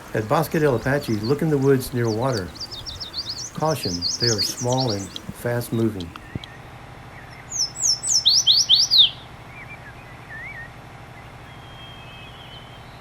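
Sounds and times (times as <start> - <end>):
warbler singing: 0.0 - 13.0
faint wavering whistles: 7.6 - 13.0.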